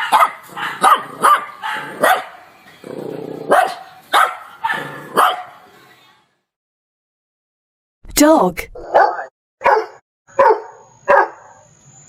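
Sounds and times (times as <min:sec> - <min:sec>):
dog barking: 0:00.0 - 0:02.5, 0:03.5 - 0:05.6, 0:08.8 - 0:11.7.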